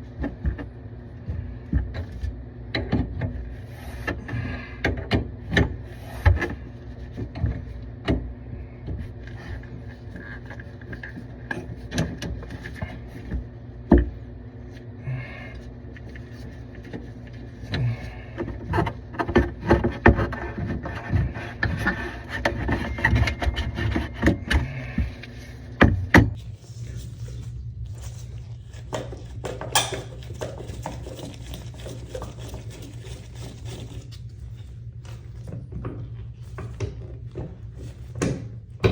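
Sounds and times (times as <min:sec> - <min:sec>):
steady low hum: 0:00.0 - 0:38.9
hand tools clicking and knocking: 0:28.9 - 0:34.0.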